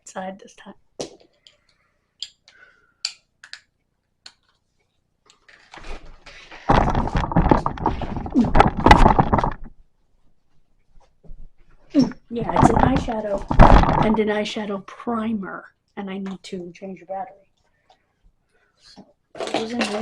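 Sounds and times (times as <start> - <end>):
thumps and rubbing: 5.7 - 9.8, 10.5 - 14.4.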